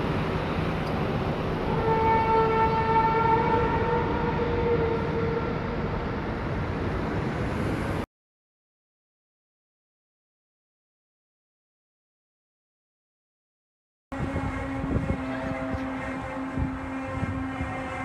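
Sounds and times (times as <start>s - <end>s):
horn-like blare: 1.6s - 5.9s, 14.1s - 18.0s
rumbling background: 14.2s - 18.0s.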